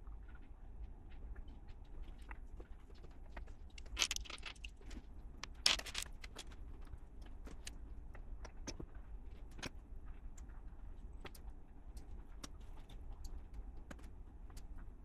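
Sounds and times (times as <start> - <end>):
plastic toy bricks clicking and rattling: 3.7 - 4.8, 5.4 - 6.4.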